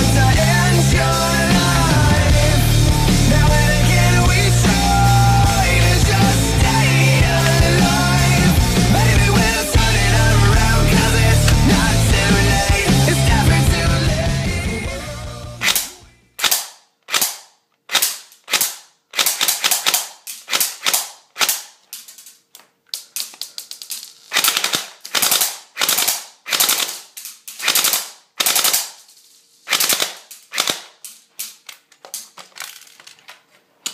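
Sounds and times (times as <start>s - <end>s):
rock music: 0.0s - 15.7s
airsoft gun shots: 15.6s - 21.7s, 24.3s - 29.0s, 29.7s - 31.0s.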